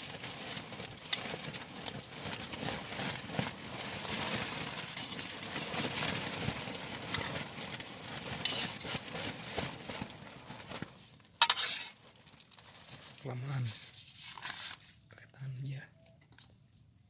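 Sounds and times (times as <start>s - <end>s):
utensils knocking on camping pan: 11.4s - 11.9s.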